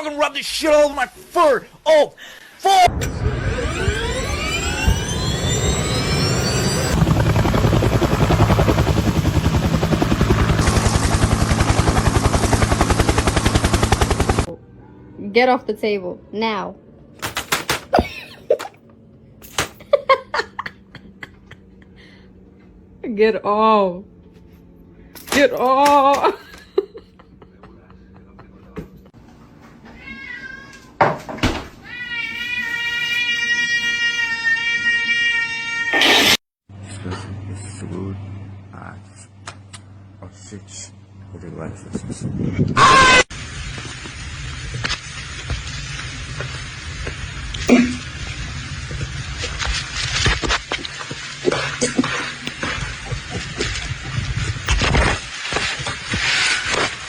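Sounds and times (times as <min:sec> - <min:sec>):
turbine whine rising in pitch: 0:02.8 - 0:15.1
helicopter rotor chop: 0:02.9 - 0:14.5
cat meowing: 0:29.9 - 0:31.0, 0:31.8 - 0:36.1.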